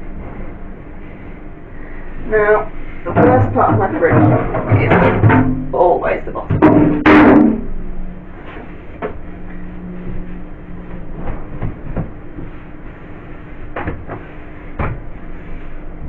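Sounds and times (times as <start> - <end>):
steady low hum: 0.0 - 16.0
knocks and bumps in fridge: 3.1 - 5.7, 6.4 - 7.6, 13.8 - 15.2.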